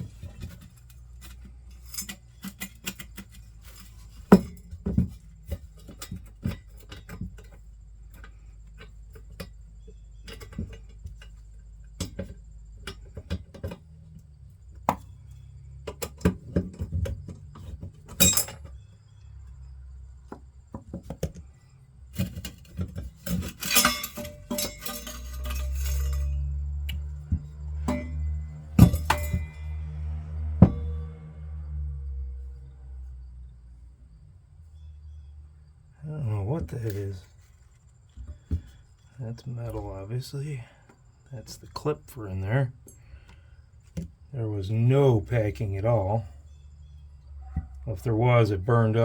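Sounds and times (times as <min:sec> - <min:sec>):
metal clinks and knocks: 0:00.0 - 0:31.2, 0:46.3 - 0:47.9.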